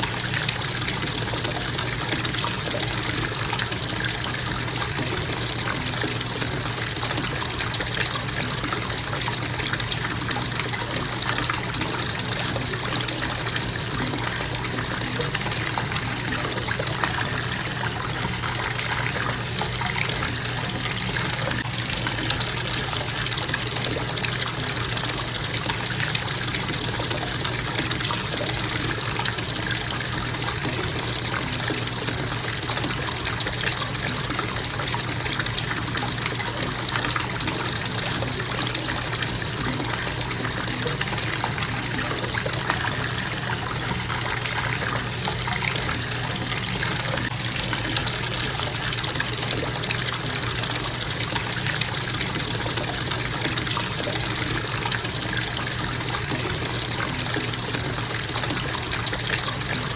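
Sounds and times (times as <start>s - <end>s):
faucet water pouring into tub: 0.0s - 59.9s.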